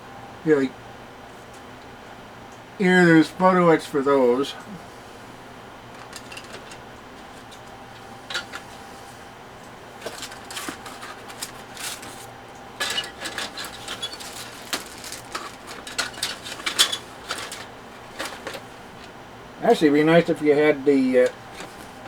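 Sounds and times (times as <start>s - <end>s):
packaging crinkling: 5.9s - 9.2s, 9.8s - 19.1s
plastic parts clicking and tapping: 6.0s - 8.7s, 10.0s - 19.1s.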